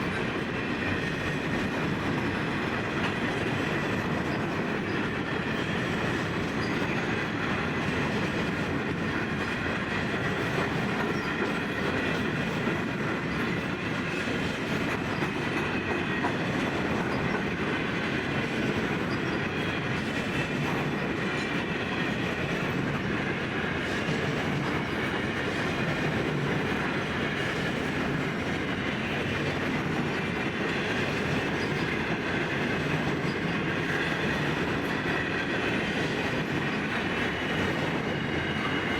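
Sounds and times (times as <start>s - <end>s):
train wheels on rail: 0.0s - 38.9s.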